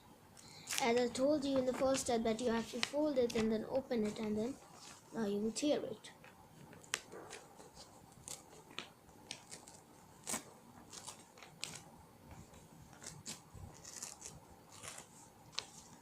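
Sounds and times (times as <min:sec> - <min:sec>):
paper tearing: 0:06.9 - 0:11.9, 0:12.9 - 0:16.0.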